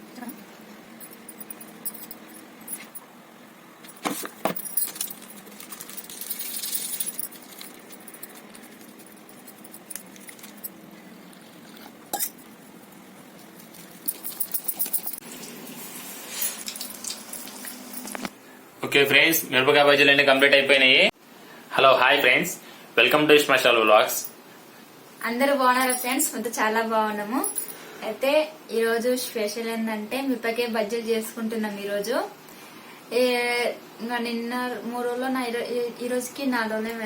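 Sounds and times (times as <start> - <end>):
kitchenware clinking: 11.8 - 12.5.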